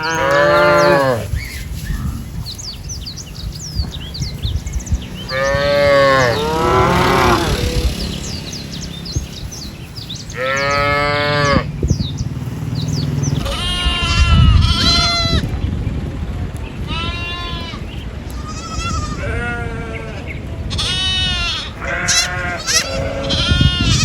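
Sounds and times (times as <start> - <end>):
cattle mooing: 0.0 - 1.3, 5.3 - 8.2, 10.4 - 11.7.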